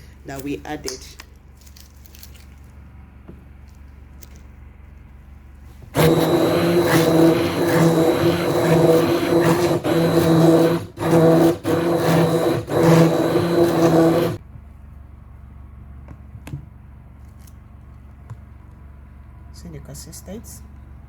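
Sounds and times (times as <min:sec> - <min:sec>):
electric mixer motor whine: 0:06.0 - 0:14.4.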